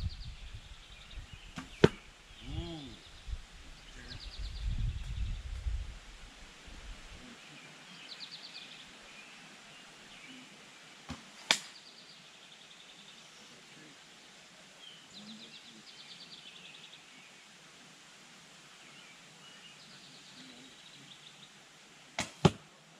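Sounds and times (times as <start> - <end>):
arrow striking target: 1.6 - 2.0, 11.1 - 11.8, 22.2 - 22.7
bow string snap: 11.1 - 11.8, 22.2 - 22.6.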